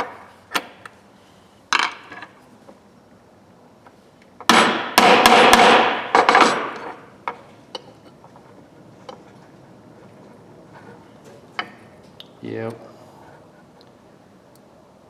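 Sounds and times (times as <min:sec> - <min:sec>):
hammer striking metal: 0:04.5 - 0:06.8.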